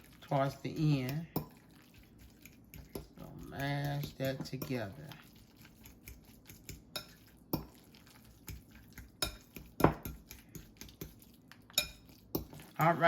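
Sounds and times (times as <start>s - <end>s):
fork clinking against bowl: 5.8s - 7.8s, 9.2s - 11.1s, 11.7s - 13.0s.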